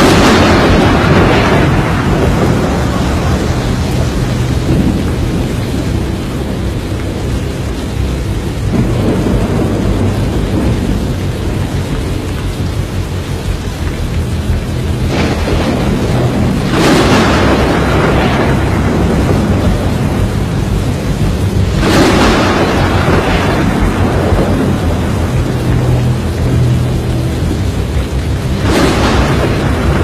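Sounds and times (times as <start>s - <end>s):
heavy rain: 0.0s - 30.0s
low rumbling thunder: 0.0s - 30.0s
wind: 0.0s - 30.0s.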